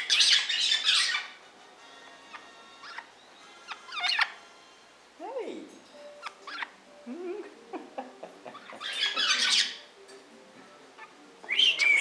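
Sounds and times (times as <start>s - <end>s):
harsh bird squawk: 0.0s - 1.4s, 2.3s - 4.4s, 6.2s - 6.8s, 8.6s - 9.9s, 11.0s - 12.0s.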